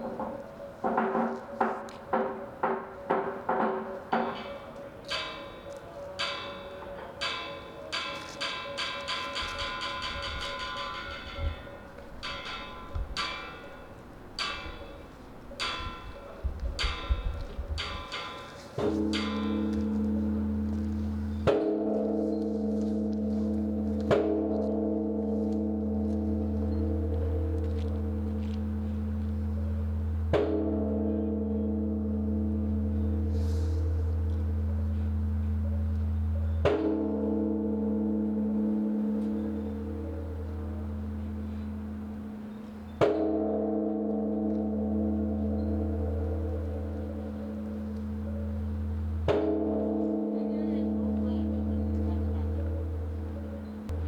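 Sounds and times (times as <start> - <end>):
ringing metal percussion strikes: 0.0 - 24.6
wooden log knocking bell: 3.2 - 21.8
large bronze bell ringing: 4.1 - 54.0.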